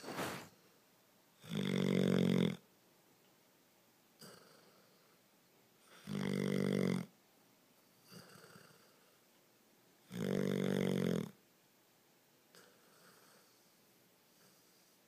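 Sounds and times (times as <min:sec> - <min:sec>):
loud buzzing snores: 0:01.4 - 0:02.6, 0:05.9 - 0:07.1, 0:10.1 - 0:11.3
faint breath: 0:12.6 - 0:15.0.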